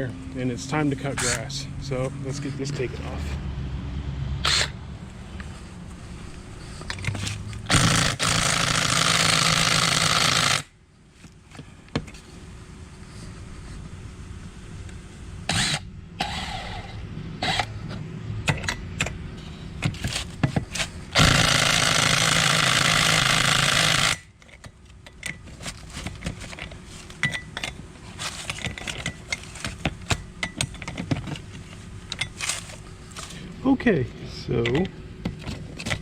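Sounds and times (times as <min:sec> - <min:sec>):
tools clicking and clanking: 0:06.7 - 0:10.6, 0:17.4 - 0:33.4, 0:34.5 - 0:36.0
impact wrench hammering: 0:06.9 - 0:10.7, 0:19.8 - 0:24.3.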